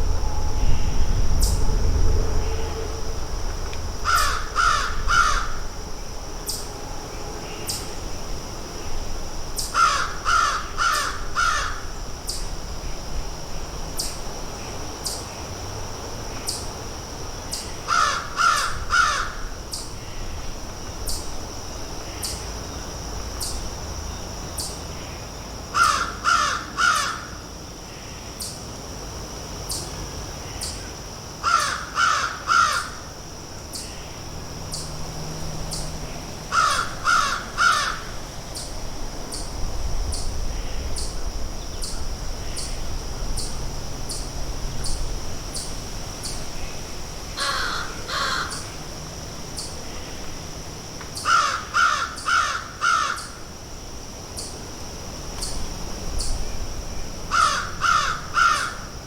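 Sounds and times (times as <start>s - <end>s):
steady high-pitched whine: 0.0s - 25.8s, 27.3s - 59.0s
crows cawing: 4.0s - 5.6s, 9.8s - 11.8s, 17.9s - 19.4s, 25.8s - 27.4s, 31.4s - 33.0s, 36.5s - 38.1s, 47.4s - 48.6s, 51.2s - 53.4s, 57.3s - 58.9s.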